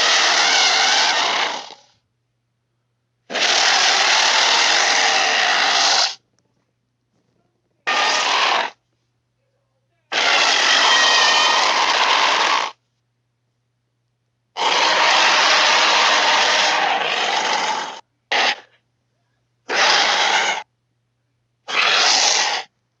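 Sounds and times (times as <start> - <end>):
raspy hissing dinosaur roars: 0.0 - 1.9, 3.3 - 6.2, 10.1 - 12.8, 14.6 - 18.7, 19.7 - 20.6, 21.7 - 22.7.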